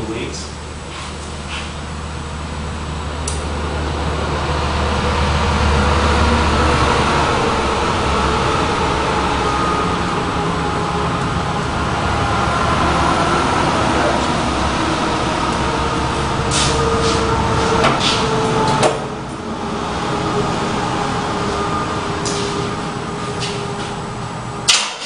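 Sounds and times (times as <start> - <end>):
car engine rumbling: 0.0 - 24.9.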